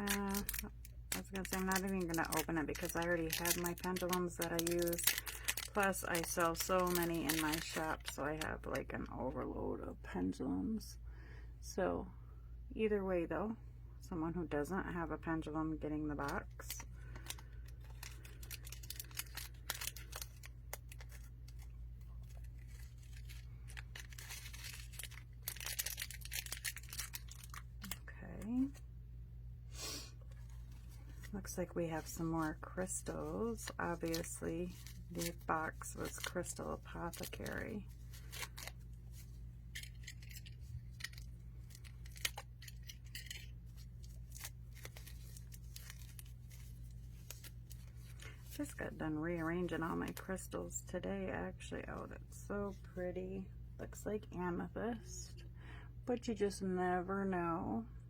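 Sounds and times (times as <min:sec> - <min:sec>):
wrapping rustling and tearing: 0:00.0 - 0:08.9, 0:16.1 - 0:28.8, 0:29.8 - 0:50.5
steady low hum: 0:00.0 - 0:58.0.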